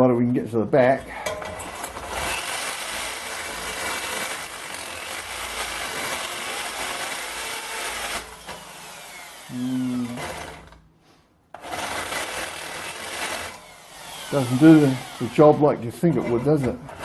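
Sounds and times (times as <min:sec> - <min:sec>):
electric drill drilling into steel: 0:01.6 - 0:10.8, 0:11.6 - 0:15.6
drill motor winding down whine: 0:02.1 - 0:10.8, 0:11.7 - 0:15.6.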